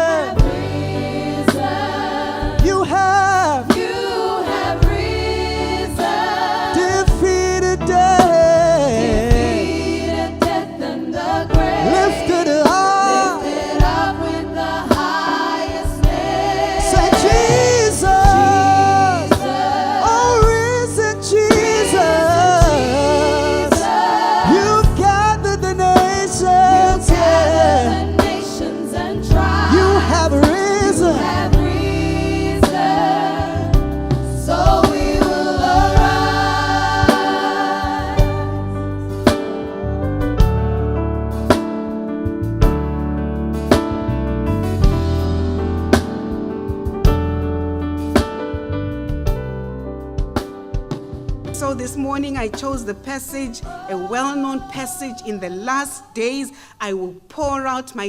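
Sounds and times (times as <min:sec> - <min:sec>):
bass line: 0:00.0 - 0:06.1, 0:06.8 - 0:15.1, 0:15.7 - 0:37.2, 0:37.9 - 0:50.4
voices singing gospel: 0:00.0 - 0:40.0, 0:51.6 - 0:57.0
band playing: 0:00.0 - 0:55.8
low drum beat: 0:02.4 - 0:04.1, 0:08.0 - 0:10.6, 0:11.6 - 0:12.9, 0:15.9 - 0:23.9, 0:24.5 - 0:28.5, 0:29.2 - 0:32.9
drum strokes: 0:09.1 - 0:25.2, 0:28.2 - 0:38.6.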